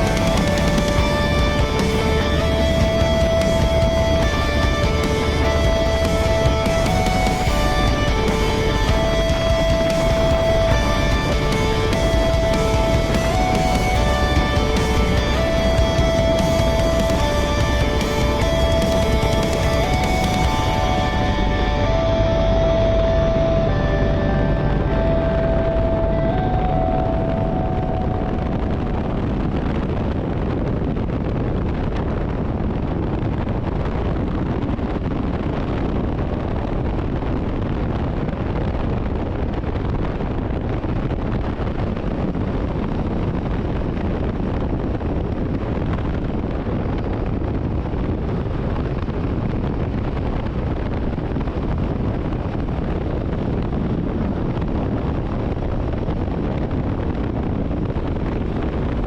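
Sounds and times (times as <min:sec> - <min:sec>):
road noise: 0:00.0 - 0:30.0
wind buffeting microphone: 0:00.0 - 0:59.0.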